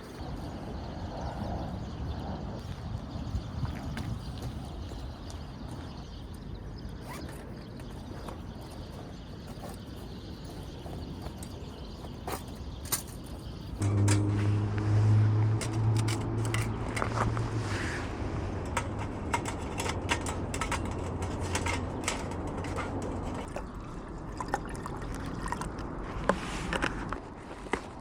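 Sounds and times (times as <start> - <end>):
low hum: 13.8 - 26.2
small clicks and knocks: 18.6 - 23.7
water pouring: 23.5 - 26.0.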